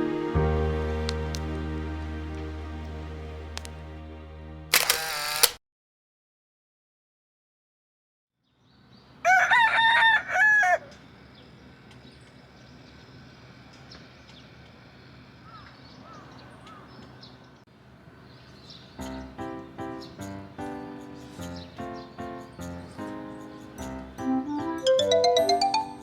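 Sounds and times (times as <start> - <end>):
music: 0.0 - 4.7, 19.0 - 26.0
rooster crowing: 9.2 - 11.0
small bird chirps: 21.0 - 23.9.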